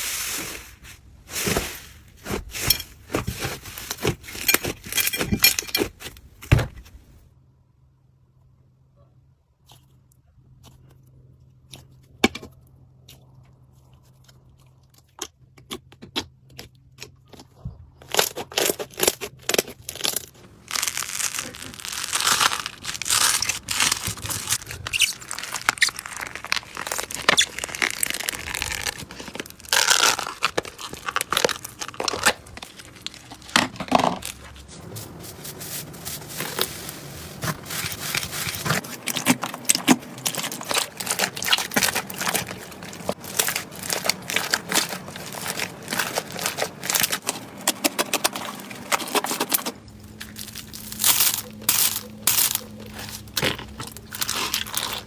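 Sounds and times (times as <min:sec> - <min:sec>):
slime popping and crackling: 0:18.0 - 0:34.4, 0:37.4 - 0:48.4, 0:50.2 - 0:55.0.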